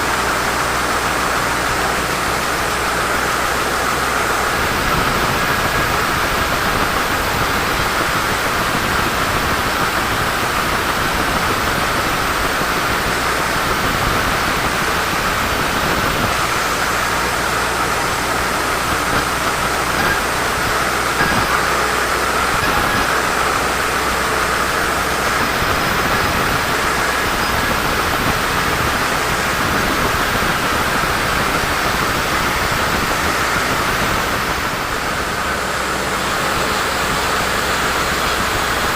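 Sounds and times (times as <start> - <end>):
sawmill saw whining: 0.0 - 38.9.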